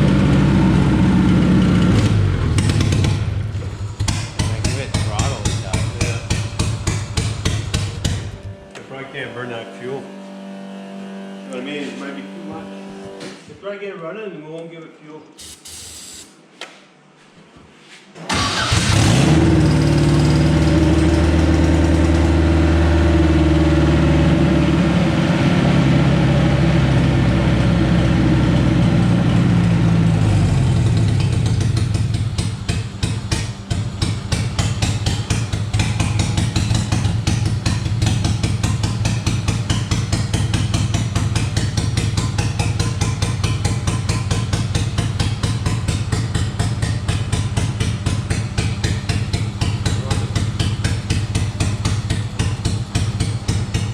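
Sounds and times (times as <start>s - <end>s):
car engine idling unevenly: 2.3s - 8.6s, 29.2s - 53.9s.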